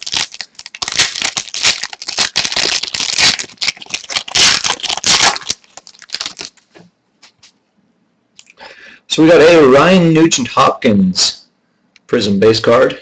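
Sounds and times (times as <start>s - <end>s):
wrapper tearing and crinkling: 0.0s - 6.7s.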